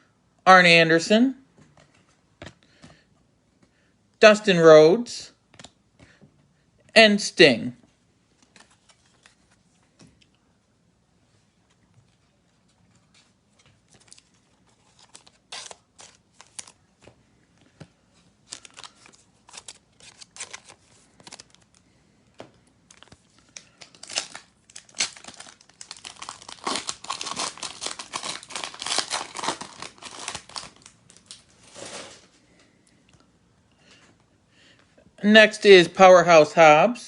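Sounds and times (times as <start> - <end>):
foil wrapper crinkling and tearing: 13.9 - 16.9, 18.4 - 21.8, 22.9 - 32.2.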